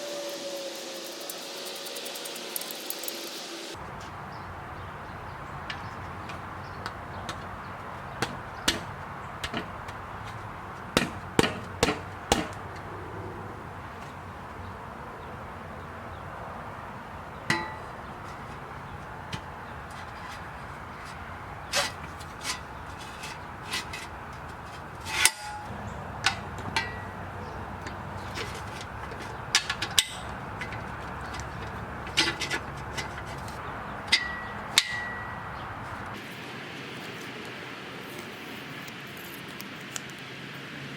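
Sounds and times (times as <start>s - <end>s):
steady background noise: 0.0s - 40.9s
metallic knocks and clinks: 17.5s - 18.6s, 21.0s - 35.6s.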